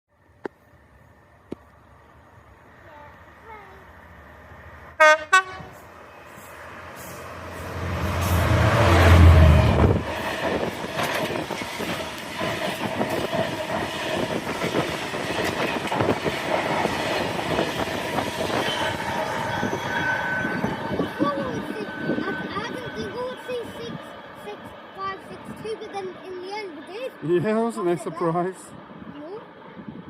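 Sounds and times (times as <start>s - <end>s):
diesel locomotive engine passing: 0.2s - 30.0s
locomotive horn blasts: 5.0s - 5.8s.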